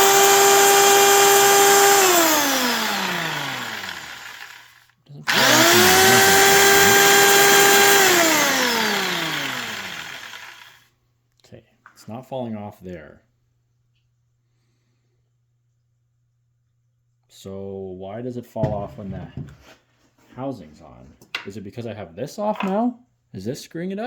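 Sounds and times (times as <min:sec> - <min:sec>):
belt sander motor whining: 0:00.0 - 0:10.8.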